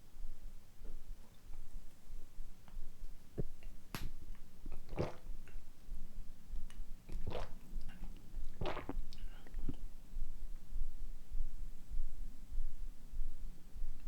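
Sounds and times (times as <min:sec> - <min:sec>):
stomach gurgling: 0:04.6 - 0:05.6, 0:07.1 - 0:09.9.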